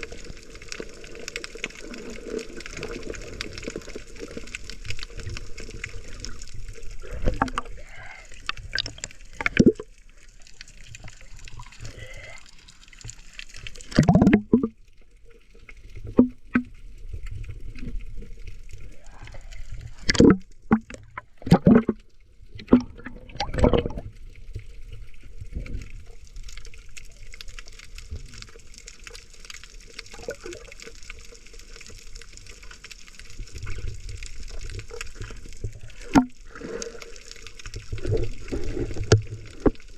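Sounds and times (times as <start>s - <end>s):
water sloshing and gurgling: 0.0s - 39.9s
thumps and splashes: 8.5s - 9.9s, 13.8s - 14.8s, 16.0s - 16.7s, 19.9s - 24.1s, 35.2s - 36.6s, 37.8s - 39.9s.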